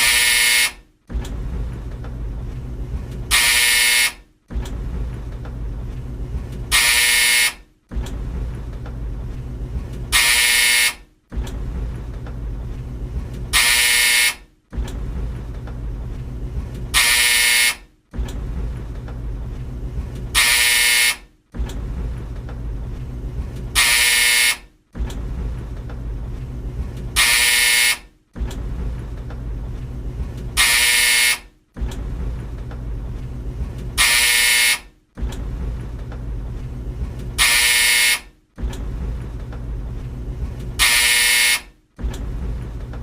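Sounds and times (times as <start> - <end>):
dryer buzzer: 0.0 - 0.9, 3.3 - 4.3, 6.7 - 7.7, 10.1 - 11.1, 13.5 - 14.8, 16.9 - 17.9, 20.3 - 21.3, 23.7 - 24.8, 27.2 - 28.2, 30.6 - 31.6, 34.0 - 35.0, 37.4 - 38.4, 40.8 - 41.8
tumble dryer rumbling: 0.0 - 37.7, 38.4 - 43.0.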